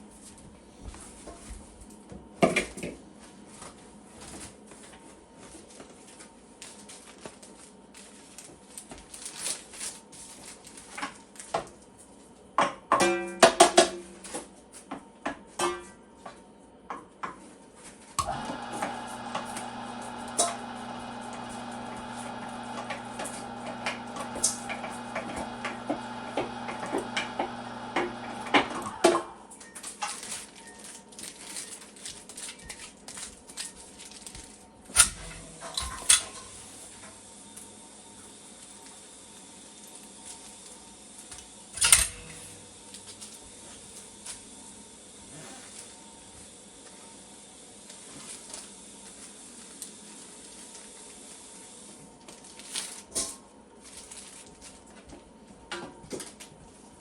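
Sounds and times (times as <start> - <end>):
metal pans and utensils clanking: 15.6 - 16.0, 35.0 - 36.8
electric meat grinder motor hum: 18.2 - 29.4.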